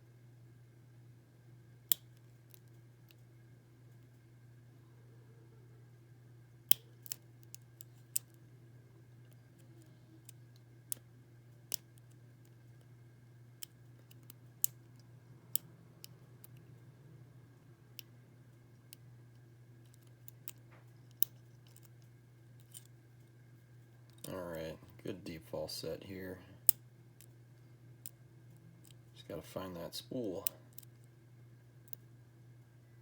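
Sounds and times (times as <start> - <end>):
steady low hum: 0.0 - 33.0
metallic lock pick clicks: 22.6 - 22.9.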